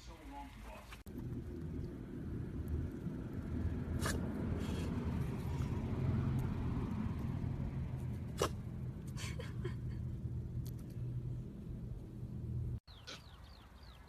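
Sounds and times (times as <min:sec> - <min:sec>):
low rumble: 0:01.1 - 0:12.8
pet sneezing: 0:08.3 - 0:08.6.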